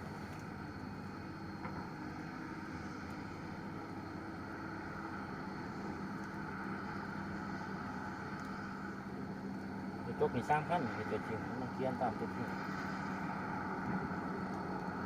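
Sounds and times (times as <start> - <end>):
heavy diesel engine droning: 0.0 - 15.0.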